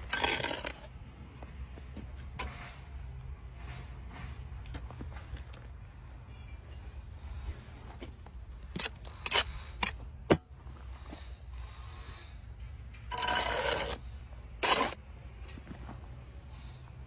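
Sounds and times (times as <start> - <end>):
scrapes and knocks: 0.0 - 6.8.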